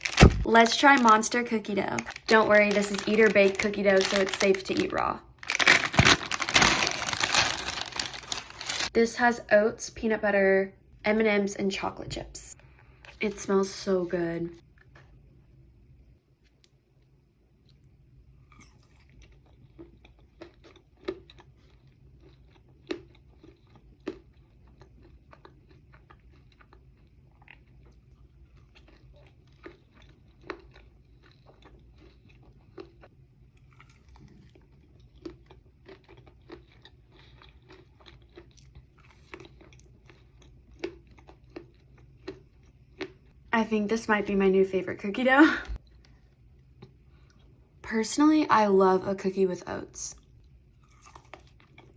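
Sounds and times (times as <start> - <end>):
close chewing mouth sounds: 18.5 - 43.4, 50.2 - 51.9
crunchy clicks of chewing: 18.5 - 43.4, 50.2 - 51.9.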